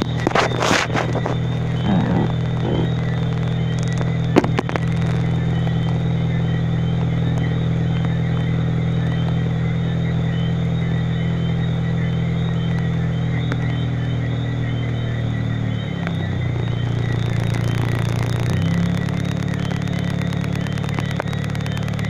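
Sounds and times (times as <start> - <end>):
constant low hum: 0.0 - 22.0
steady rain: 16.5 - 22.0.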